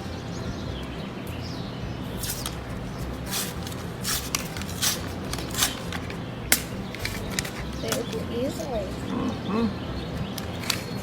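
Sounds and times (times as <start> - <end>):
bird chirping: 0.0 - 11.0
paper crinkling and tearing: 2.2 - 8.2.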